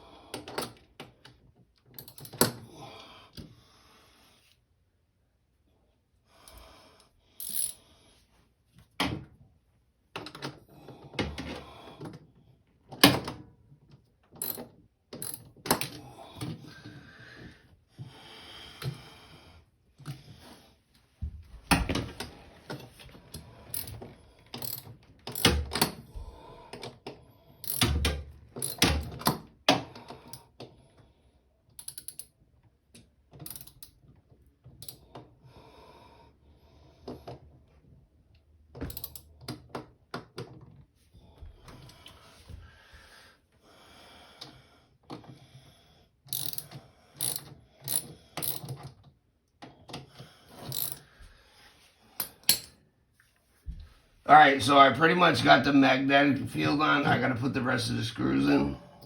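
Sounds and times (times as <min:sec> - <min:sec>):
metallic clicks and rattles: 0:31.8 - 0:32.3, 0:33.4 - 0:34.0.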